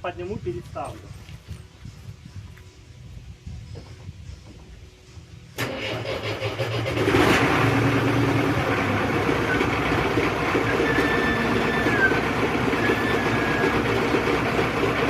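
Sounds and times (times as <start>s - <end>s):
excavator diesel engine running: 5.6s - 15.0s.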